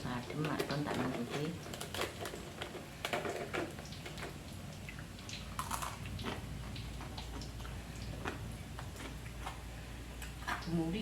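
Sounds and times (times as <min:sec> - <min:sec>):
chewing crunchy fried fish: 0:04.9 - 0:10.4.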